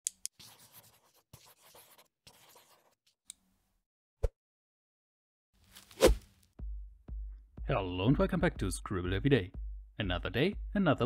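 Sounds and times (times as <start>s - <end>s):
pencil scribbling on paper: 0.4s - 3.0s.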